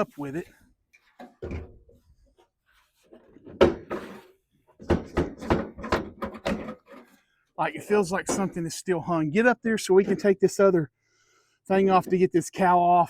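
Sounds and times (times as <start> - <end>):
heavy metal clunks and knocks: 1.2 - 2.0, 3.2 - 7.1.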